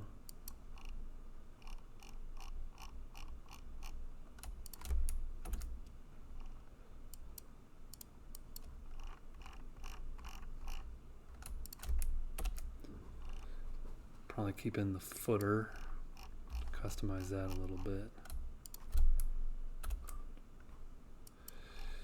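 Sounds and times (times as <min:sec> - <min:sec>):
keyboard typing: 0:02.4 - 0:06.6, 0:08.0 - 0:13.5, 0:15.1 - 0:20.3.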